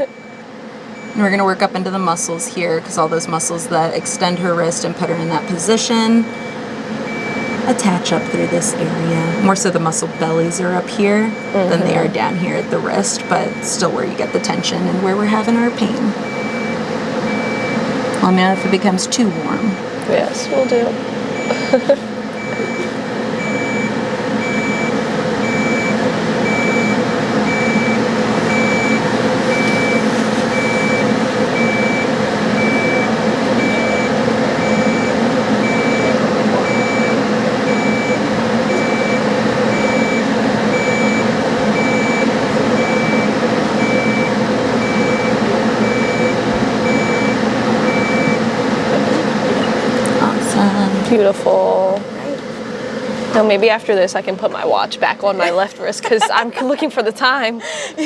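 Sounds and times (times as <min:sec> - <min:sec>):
short electronic beeps: 0:00.0 - 0:00.4, 0:05.2 - 0:19.8, 0:20.4 - 0:48.4
steady hum: 0:00.0 - 0:58.0.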